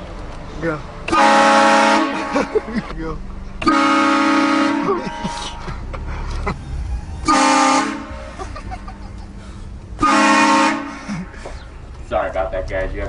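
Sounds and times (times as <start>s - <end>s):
train horn blast: 1.1s - 2.5s, 3.6s - 5.6s, 7.2s - 8.4s, 10.0s - 11.1s
low rumble: 4.8s - 10.1s.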